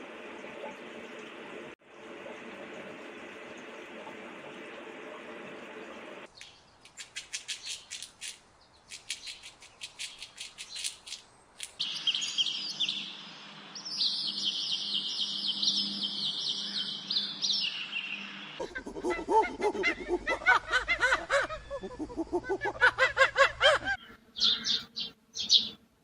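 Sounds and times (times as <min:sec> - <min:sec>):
birds chirping chorus: 0:08.6 - 0:22.7, 0:23.9 - 0:25.8.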